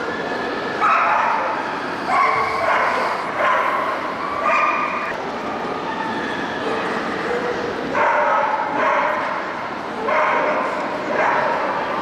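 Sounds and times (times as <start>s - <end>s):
dog whining: 2.0s - 3.7s.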